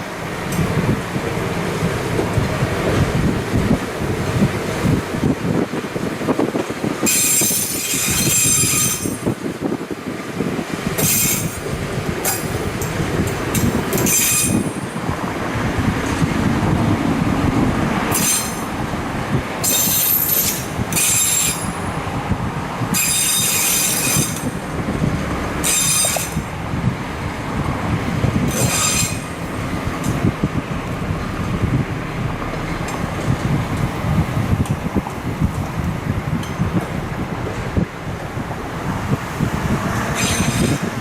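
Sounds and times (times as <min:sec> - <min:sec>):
rail vehicle engine rumble: 0:00.0 - 0:41.0
metallic wheel squeals: 0:07.0 - 0:09.3, 0:14.0 - 0:14.8, 0:18.1 - 0:18.7, 0:19.6 - 0:21.8, 0:22.9 - 0:24.6, 0:25.6 - 0:26.4, 0:28.5 - 0:29.4, 0:40.1 - 0:41.0.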